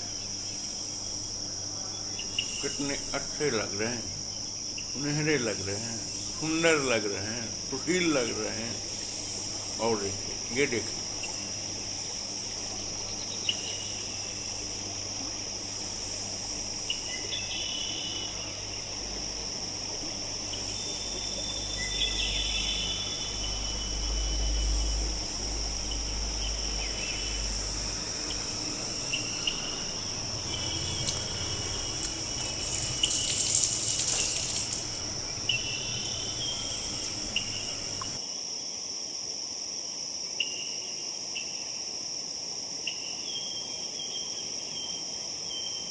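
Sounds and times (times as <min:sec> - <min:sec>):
insect drone: 0:00.0 - 0:45.9
bird chirps: 0:20.6 - 0:24.8.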